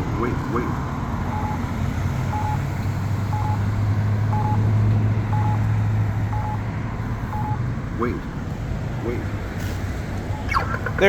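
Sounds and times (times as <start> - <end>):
vehicle engine droning: 0.0 - 11.0
pedestrian signal beeps: 1.3 - 2.7, 3.3 - 3.7, 4.3 - 4.7, 5.3 - 5.7, 6.3 - 6.6, 7.2 - 7.6, 10.3 - 11.0.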